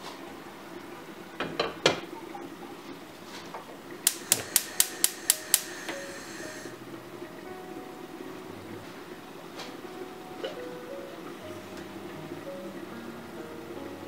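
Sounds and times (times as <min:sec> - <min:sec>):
sharp clicks: 0:04.0 - 0:06.0.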